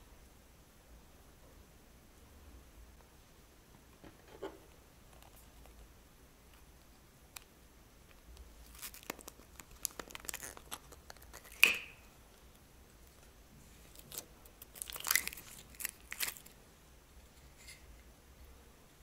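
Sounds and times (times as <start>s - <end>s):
plastic bag crinkling: 8.6s - 11.9s, 13.9s - 16.6s.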